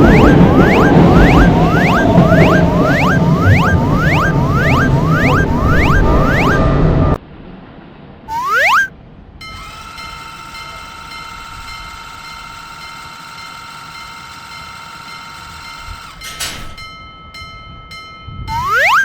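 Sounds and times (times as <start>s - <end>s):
high electronic tone: 0.0s - 7.2s, 8.3s - 8.9s, 18.5s - 19.0s
rising slide-whistle glide: 0.0s - 7.2s, 8.3s - 8.9s, 18.5s - 19.0s.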